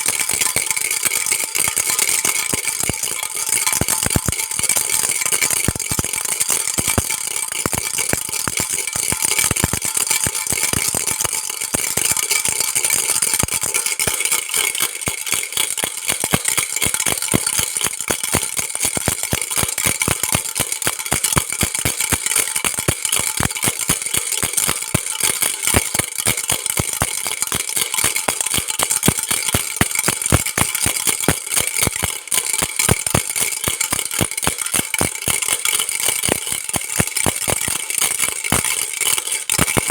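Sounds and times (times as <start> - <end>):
baby rattle shaken: 0.0 - 39.9.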